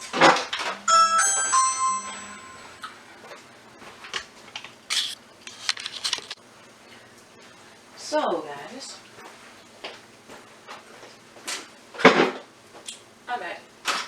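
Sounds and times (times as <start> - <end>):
bell-like chime notes: 0.0 - 3.0
packaging crinkling and rustling: 4.6 - 6.4.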